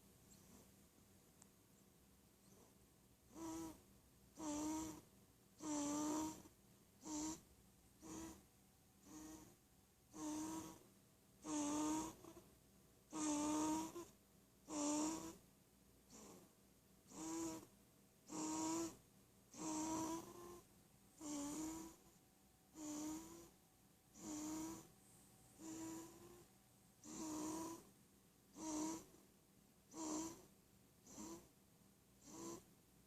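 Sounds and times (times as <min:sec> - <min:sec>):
squeaky snoring: 0:02.4 - 0:03.8, 0:04.4 - 0:12.5, 0:13.1 - 0:15.4, 0:16.1 - 0:16.5, 0:17.1 - 0:24.9, 0:25.6 - 0:27.9, 0:28.5 - 0:29.2, 0:29.9 - 0:31.5, 0:32.2 - 0:32.7.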